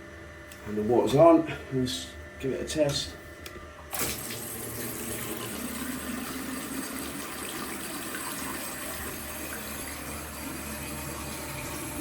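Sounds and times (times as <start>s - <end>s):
tap water running: 3.9s - 12.0s.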